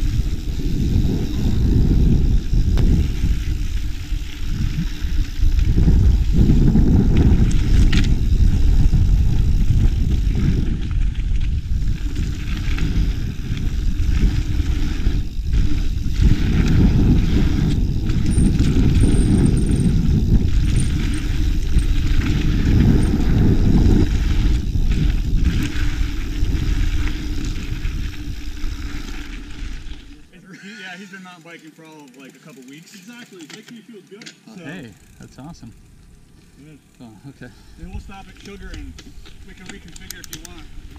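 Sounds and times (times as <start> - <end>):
wind on microphone: 0.0 - 30.1
bike tyres and frame rattling: 0.0 - 40.9.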